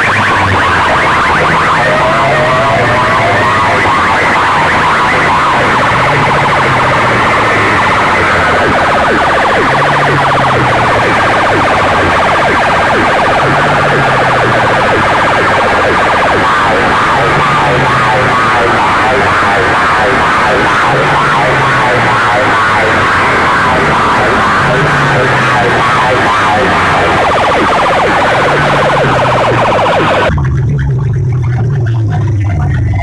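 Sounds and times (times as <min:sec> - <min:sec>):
electronic siren warbling: 0:00.0 - 0:33.0
low pulsing tone: 0:00.0 - 0:33.0.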